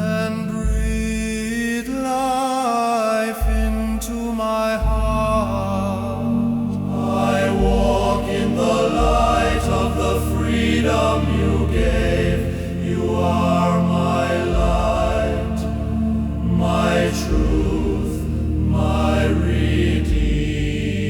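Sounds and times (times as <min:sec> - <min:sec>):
choir singing sustained chords: 0:00.0 - 0:01.3, 0:01.9 - 0:21.0
low sustained bass notes: 0:04.8 - 0:21.0.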